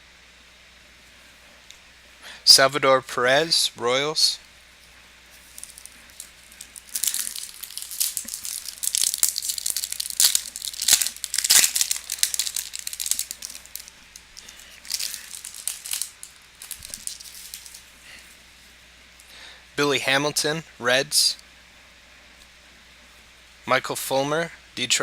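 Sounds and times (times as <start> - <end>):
foil wrapper tearing and crinkling: 5.4 - 17.9.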